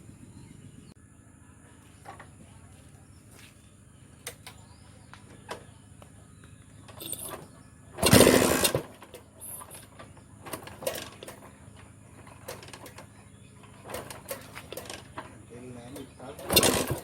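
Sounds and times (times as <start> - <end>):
faint low hum: 0.0 - 17.0
motorcycle engine starting burst: 4.2 - 17.0.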